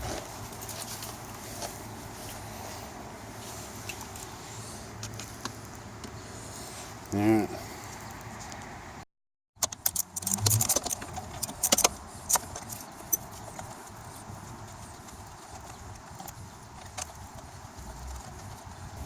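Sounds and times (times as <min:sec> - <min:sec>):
sharp clicks: 0:09.6 - 0:13.2
tools and metal parts clinking: 0:09.6 - 0:13.7.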